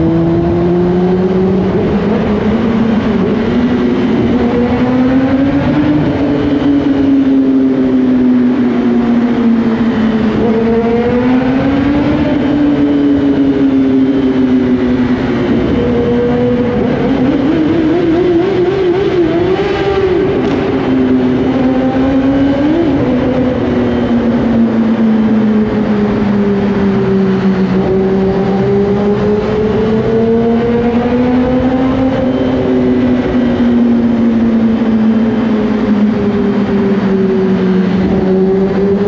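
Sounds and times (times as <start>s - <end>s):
motorcycle engine revving high: 0.0s - 39.0s.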